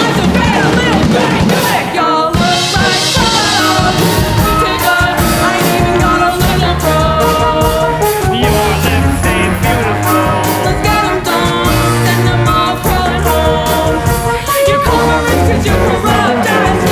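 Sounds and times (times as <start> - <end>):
singing over drum beat: 0.0 - 16.9.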